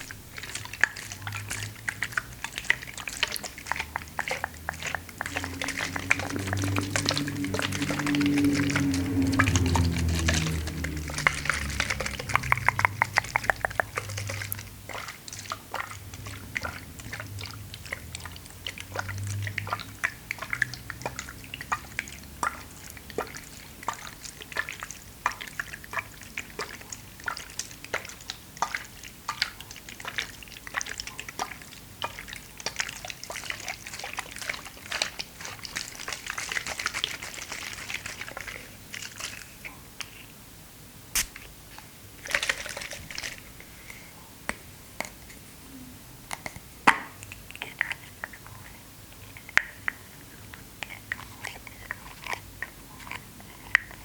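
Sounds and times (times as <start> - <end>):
water trickling and dripping: 0.0 - 39.6, 42.2 - 44.0.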